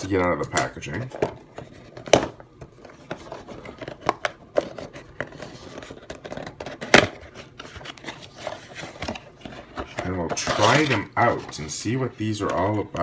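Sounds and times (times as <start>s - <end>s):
toy packaging being opened: 0.5s - 12.8s.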